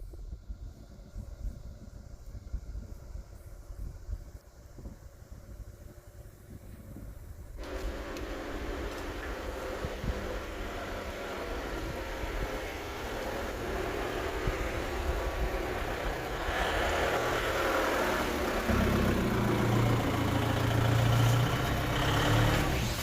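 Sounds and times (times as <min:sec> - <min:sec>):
heavy vehicle engine running: 0:07.6 - 0:23.0.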